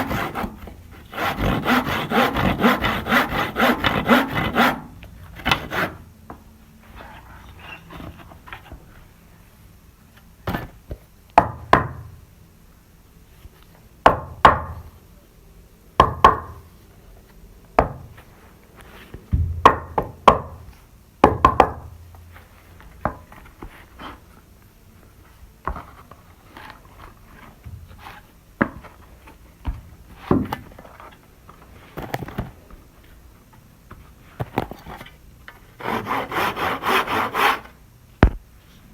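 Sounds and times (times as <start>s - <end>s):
wooden knocks and thunks: 19.3s - 20.6s.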